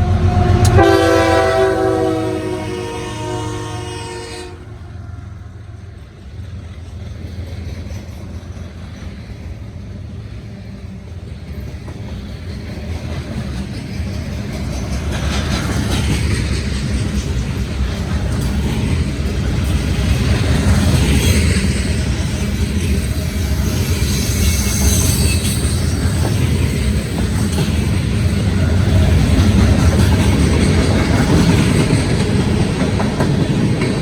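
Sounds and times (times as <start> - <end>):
train horn: 0.0 - 5.0
train wheels rumbling on rail: 0.0 - 34.0.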